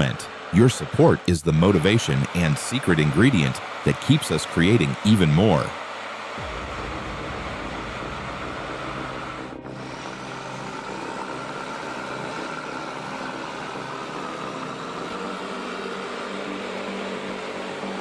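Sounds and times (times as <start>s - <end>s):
heavy machine engine droning: 0.0s - 18.0s.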